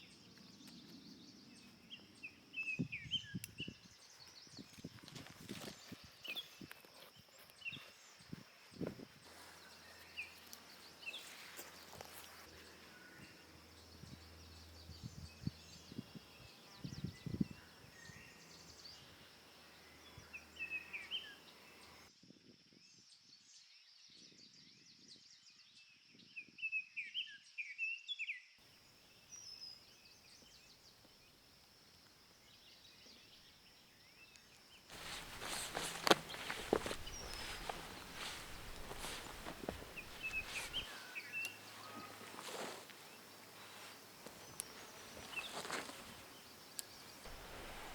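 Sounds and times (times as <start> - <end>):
bird chirps: 32.4 - 47.9.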